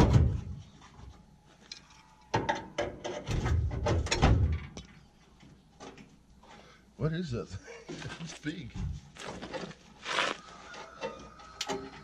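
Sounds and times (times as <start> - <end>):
metal knocking and scraping: 2.4 - 4.8.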